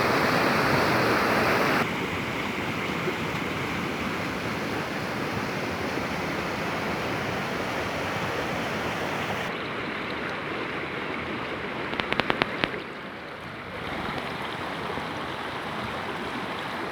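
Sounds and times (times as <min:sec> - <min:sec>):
waterfall rushing: 0:00.0 - 0:02.0, 0:02.7 - 0:09.6
sharp clicks: 0:11.9 - 0:12.8.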